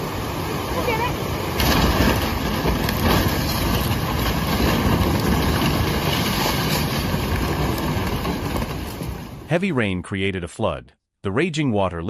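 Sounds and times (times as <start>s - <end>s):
loud steady rushing noise: 0.0s - 9.6s.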